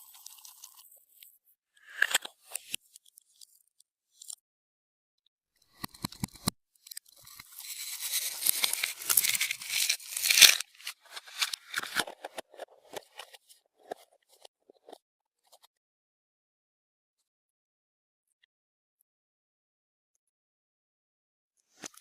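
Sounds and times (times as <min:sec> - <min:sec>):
small pops and clicks: 0:05.6 - 0:07.3
sticky slime crackling: 0:07.8 - 0:10.7.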